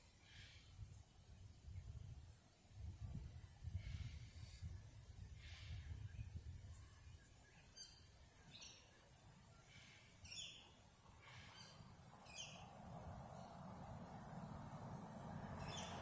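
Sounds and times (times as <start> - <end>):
low outdoor rumble: 11.8 - 16.0.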